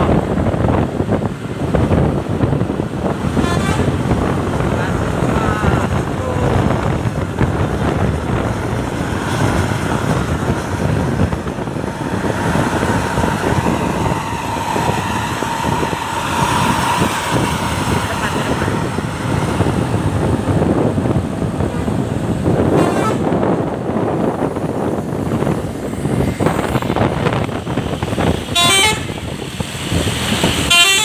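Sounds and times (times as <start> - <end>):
road vehicle noise: 0.0 - 31.0
wind buffeting microphone: 0.0 - 31.0.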